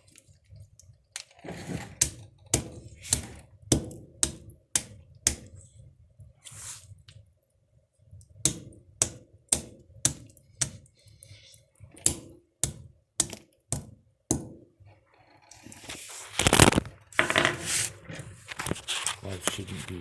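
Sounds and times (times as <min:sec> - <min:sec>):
scraping and rustling: 0:01.2 - 0:02.0, 0:14.9 - 0:20.0.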